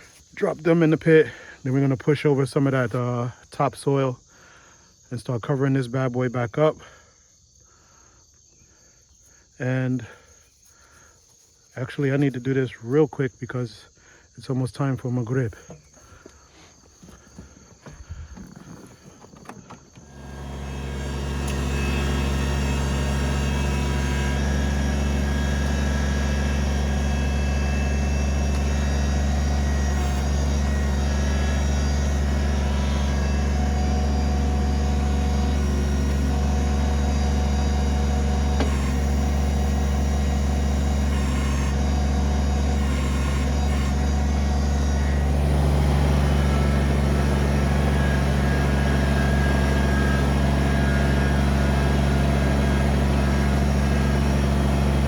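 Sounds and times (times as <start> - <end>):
tractor diesel engine running: 17.0 - 55.0.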